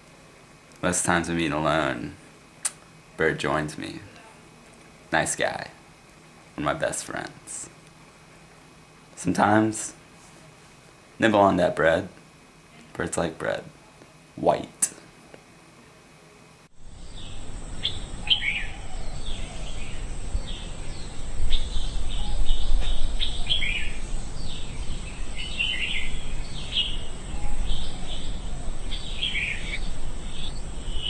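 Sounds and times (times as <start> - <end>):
birds chirping: 16.8 - 31.0
steady low rumble: 16.8 - 31.0.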